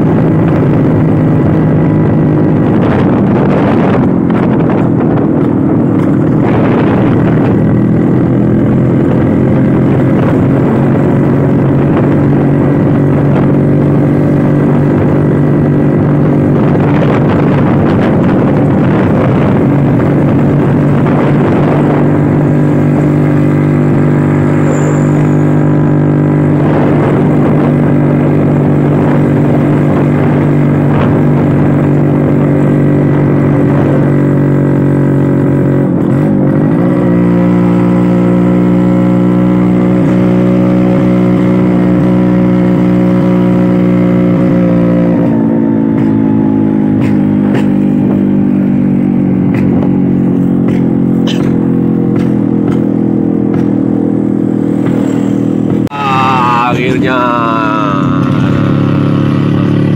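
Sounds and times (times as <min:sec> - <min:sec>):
scooter engine running: 0:46.8 - 0:59.9.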